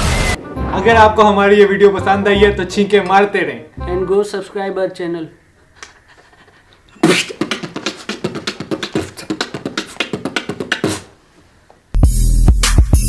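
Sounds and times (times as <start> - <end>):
beatboxing drum sounds: 7.0 - 11.2.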